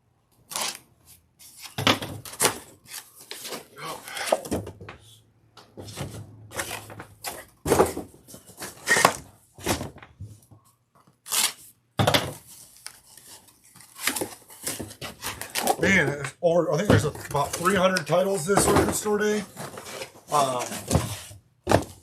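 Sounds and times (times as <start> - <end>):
cardboard rustling and scraping: 5.8 - 10.5, 12.3 - 16.2, 17.0 - 22.0.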